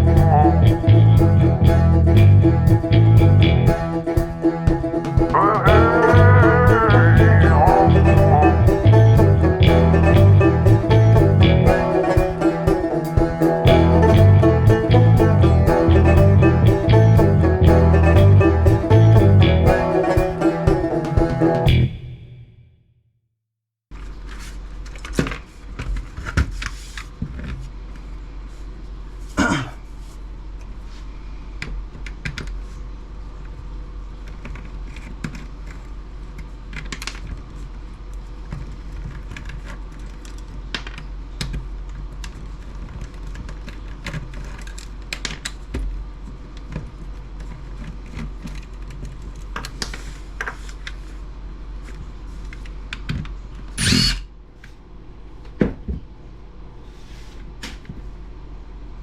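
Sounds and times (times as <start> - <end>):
steady low hum: 0.0 - 22.2.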